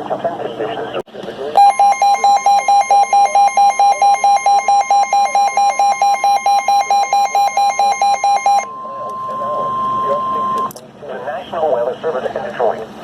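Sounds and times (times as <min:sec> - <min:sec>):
rapidly pulsing beeps: 0:01.6 - 0:10.8
steady high alarm tone: 0:01.6 - 0:10.8.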